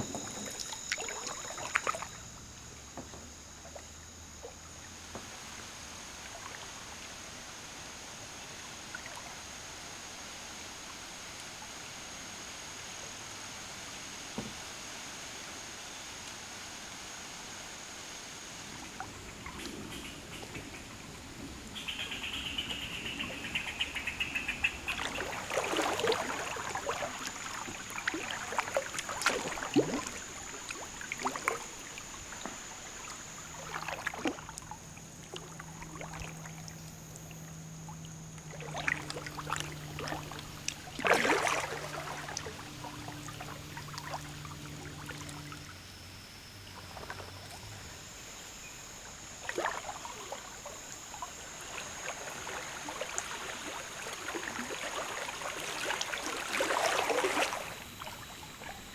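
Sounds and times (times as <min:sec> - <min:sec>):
kayak paddle splashing: 0:00.0 - 0:02.4, 0:18.6 - 0:45.8, 0:46.6 - 0:58.9
flowing water: 0:00.0 - 0:14.0, 0:16.5 - 0:58.9
faint low hum: 0:00.0 - 0:58.9.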